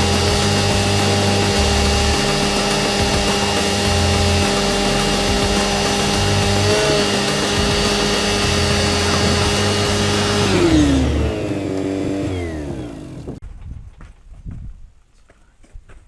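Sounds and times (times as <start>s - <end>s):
welding arc crackle and hiss: 0.0s - 9.9s
engine-driven machine humming: 0.0s - 13.4s.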